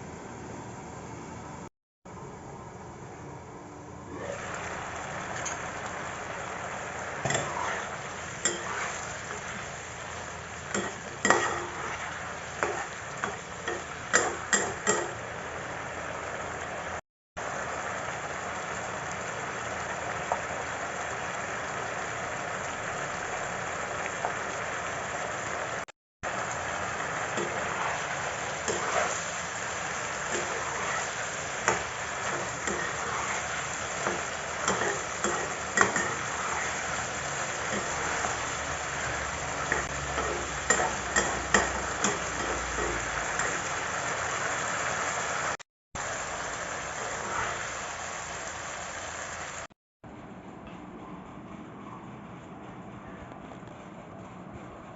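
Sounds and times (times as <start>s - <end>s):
food sizzling in a pan: 4.0s - 49.8s
spatula scraping a pan: 7.2s - 15.2s, 27.3s - 43.8s.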